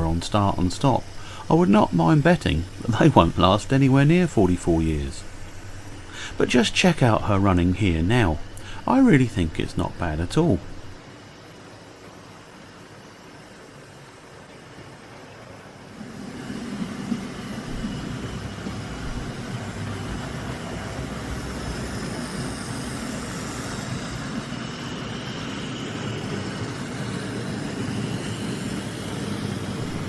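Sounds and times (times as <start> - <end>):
model train motor whirring: 16.0 - 30.0
wheels rumbling on track: 16.0 - 30.0.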